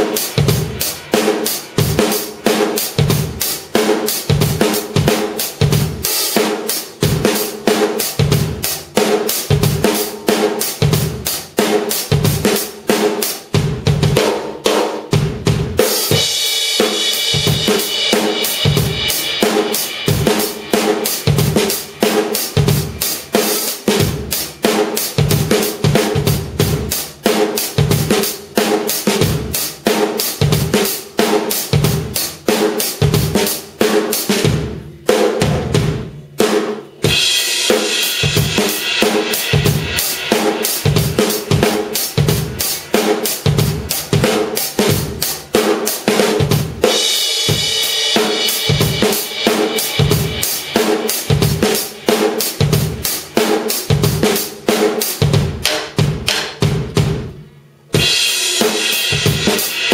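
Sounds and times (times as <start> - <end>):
drum kit groove: 0.0 - 59.9
cymbals ringing: 16.1 - 22.2, 37.0 - 44.0, 46.8 - 52.5.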